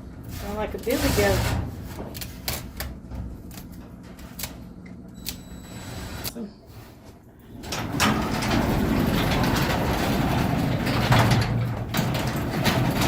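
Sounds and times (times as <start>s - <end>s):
metal garage door rumbling: 0.3s - 2.2s, 7.4s - 13.0s.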